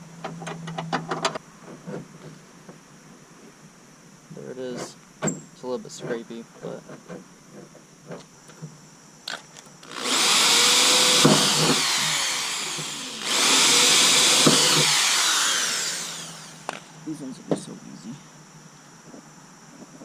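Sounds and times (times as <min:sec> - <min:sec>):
power drill boring into sheet metal: 0:09.8 - 0:16.7.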